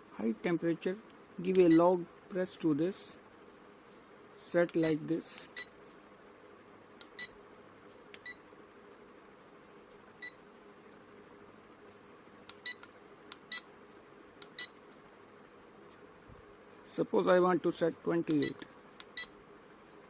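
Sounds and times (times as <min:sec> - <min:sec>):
thermometer buzzer beeping: 0:18.4 - 0:19.4.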